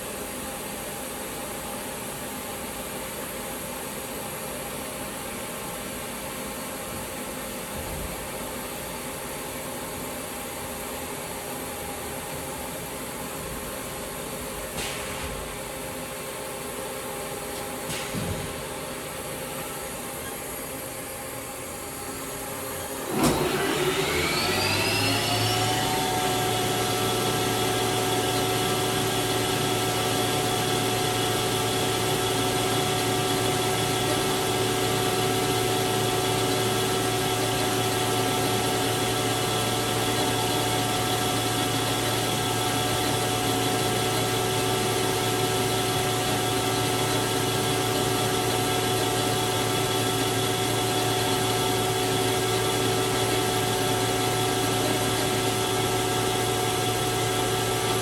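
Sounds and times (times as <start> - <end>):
lathe spindle whine: 18.9 - 58.0.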